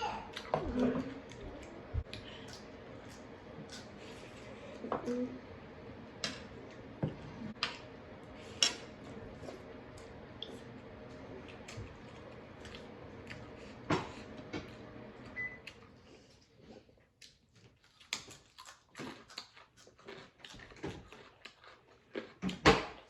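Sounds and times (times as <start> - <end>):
chewing: 0.3 - 5.2, 11.4 - 14.2, 15.6 - 23.0.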